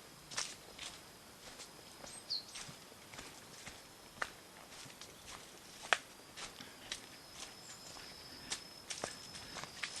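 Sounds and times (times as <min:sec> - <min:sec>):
footsteps on a trail: 0:00.0 - 0:10.0
sharp clicks underfoot: 0:02.6 - 0:07.1, 0:08.4 - 0:10.0.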